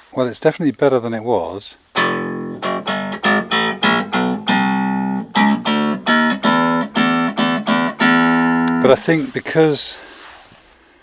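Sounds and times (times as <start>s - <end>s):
clavinet plucky notes: 2.0s - 9.1s.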